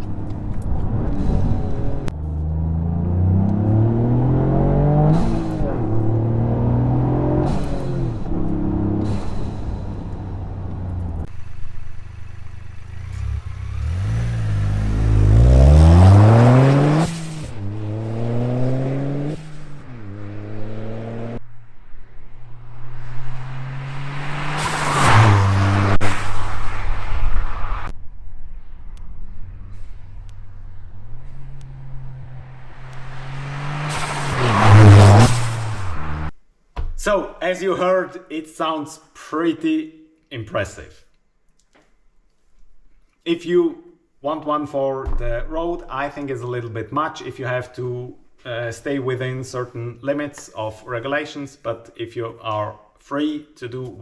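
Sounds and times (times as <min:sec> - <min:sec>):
car engine accelerating: 0:00.0 - 0:36.4
blow-off valve whoosh: 0:07.0 - 0:11.6, 0:31.2 - 0:36.3.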